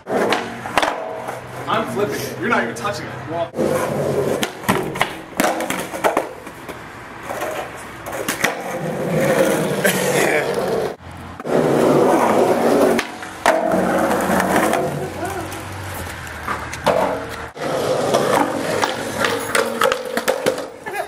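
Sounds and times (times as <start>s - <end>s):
skateboard clacking: 0.0s - 2.0s, 3.6s - 21.0s
skateboard wheels rolling on pavement: 0.0s - 21.0s.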